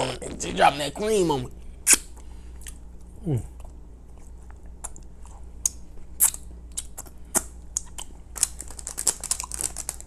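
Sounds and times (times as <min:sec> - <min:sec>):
person chewing wet smacks: 0:01.9 - 0:08.2.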